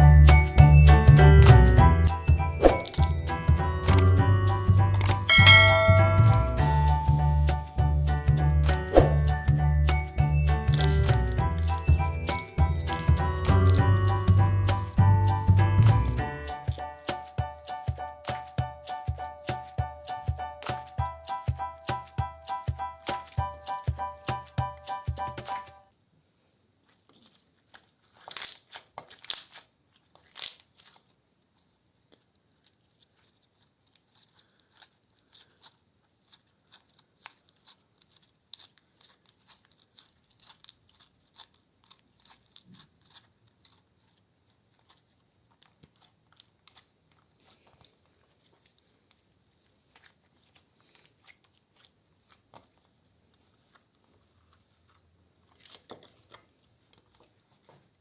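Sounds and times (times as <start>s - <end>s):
slime sticky clicks and crackles: 27.1s - 31.2s, 32.1s - 47.6s.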